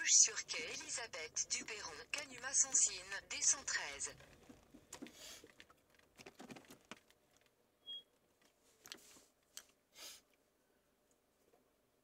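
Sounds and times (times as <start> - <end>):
faint clicks and rustles: 0.5 - 7.6
short high beep: 7.8 - 8.1.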